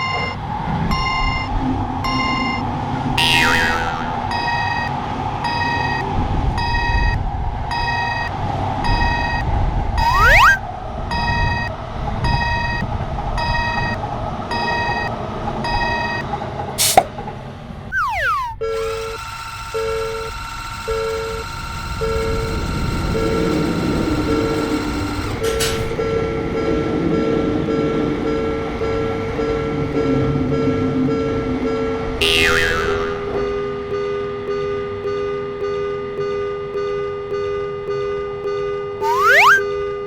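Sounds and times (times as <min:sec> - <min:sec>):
pulsing two-note crossing alarm: 0:03.2 - 0:11.7, 0:17.9 - 0:25.4, 0:32.2 - 0:33.6, 0:39.0 - 0:39.7
sliding pitch sweeps: 0:10.0 - 0:10.6, 0:17.9 - 0:18.8, 0:39.0 - 0:39.7.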